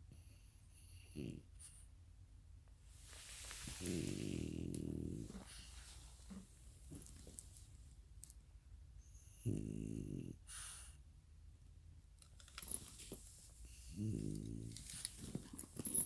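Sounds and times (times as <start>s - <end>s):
goat snoring: 3.9s - 5.8s, 9.4s - 10.5s, 13.9s - 14.8s.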